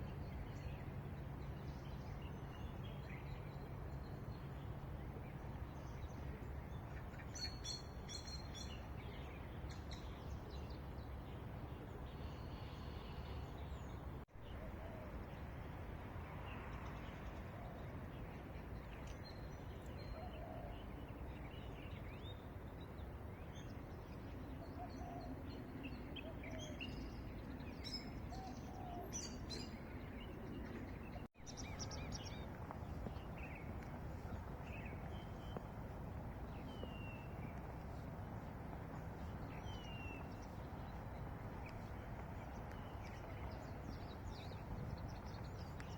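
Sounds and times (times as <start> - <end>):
low outdoor ambient hum: 0.0 - 45.9
small birds chirping: 23.6 - 45.9.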